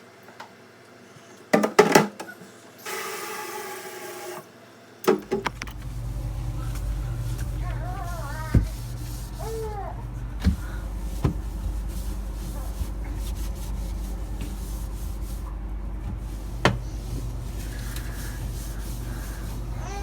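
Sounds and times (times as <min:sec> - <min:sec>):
steady low hum: 0:05.2 - 0:20.0
wiping inside refrigerator: 0:05.2 - 0:20.0
shelves knocking: 0:10.4 - 0:11.9.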